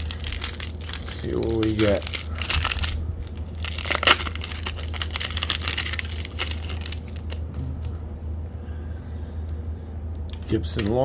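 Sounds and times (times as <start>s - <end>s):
wrapper tearing and crinkling: 0.0s - 7.9s
low hum: 0.0s - 10.5s.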